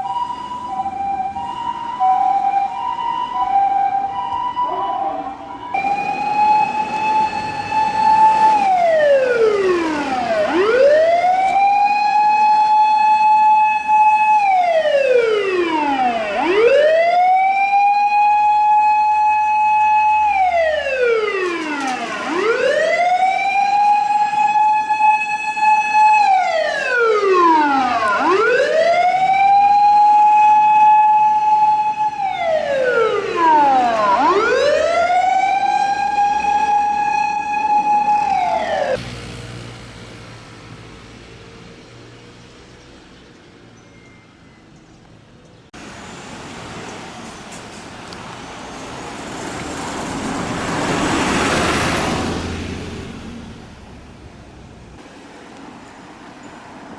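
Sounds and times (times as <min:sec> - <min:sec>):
emergency vehicle siren wailing: 0:00.0 - 0:40.8, 0:49.2 - 0:53.8.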